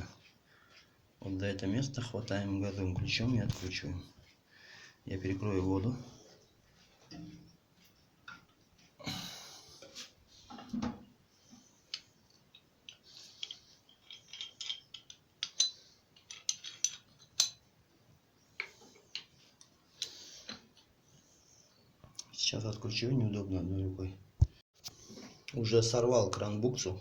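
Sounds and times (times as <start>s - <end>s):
metallic clinks of tools: 12.5s - 17.6s.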